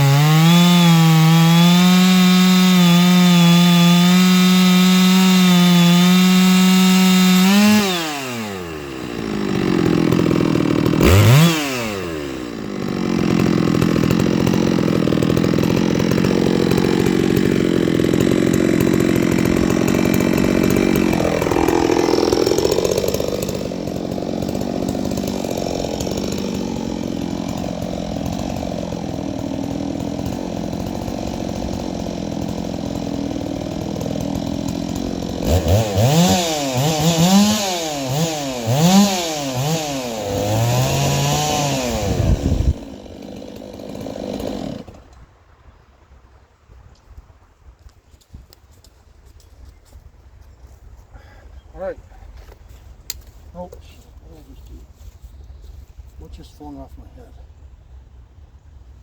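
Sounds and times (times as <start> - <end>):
chainsaw engine revving: 0.0 - 45.1.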